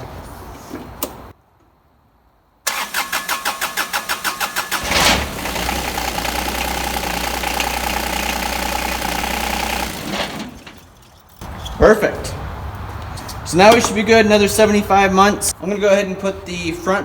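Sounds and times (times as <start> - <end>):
diesel engine idling: 2.7 - 11.6
engine starter cranking: 2.7 - 11.6.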